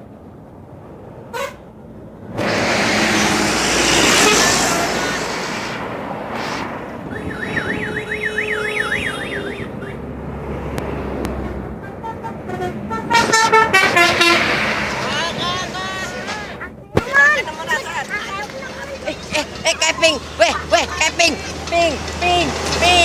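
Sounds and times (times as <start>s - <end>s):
bus passing with loud rush: 0.0s - 23.0s
warbling musical bus horn: 4.1s - 4.8s, 7.1s - 10.1s, 11.6s - 14.6s.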